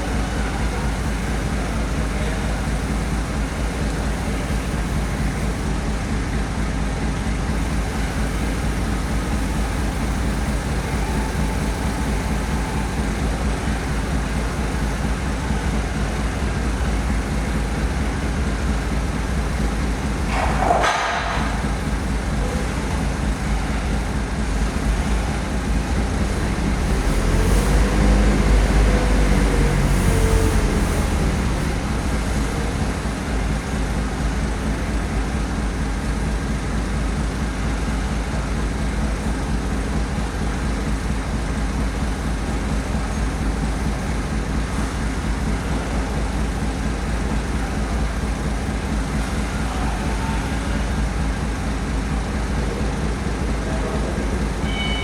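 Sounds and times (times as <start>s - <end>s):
heavy vehicle engine rumbling: 0.0s - 55.0s.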